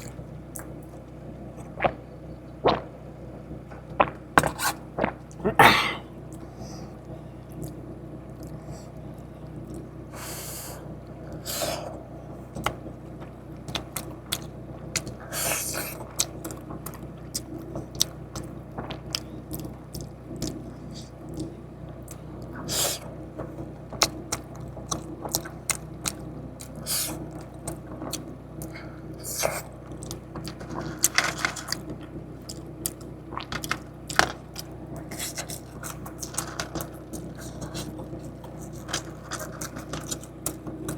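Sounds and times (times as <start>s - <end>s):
chewing with mouth clicks: 0.0s - 3.1s, 3.7s - 12.0s, 12.6s - 40.9s
crunchy bites: 0.0s - 3.1s, 3.7s - 6.4s, 24.0s - 40.9s
steady low hum: 0.0s - 40.9s.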